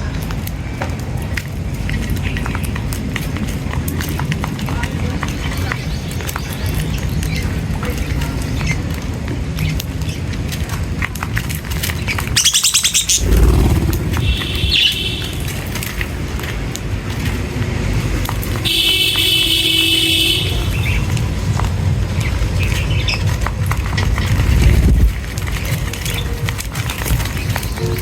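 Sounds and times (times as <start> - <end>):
small birds chirping: 11.9 - 15.7
bird trilling: 12.4 - 15.6
low rumble: 13.1 - 15.7.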